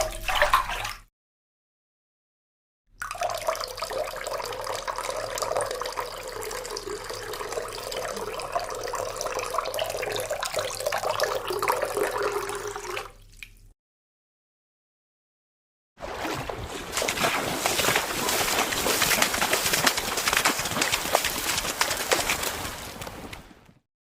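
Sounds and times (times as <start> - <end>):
water running from a tap: 3.2 - 13.1.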